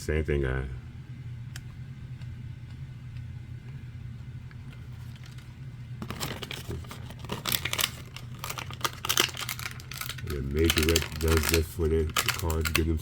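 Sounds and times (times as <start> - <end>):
steady low hum: 0.0 - 13.0
packaging crinkling and tearing: 5.0 - 13.0.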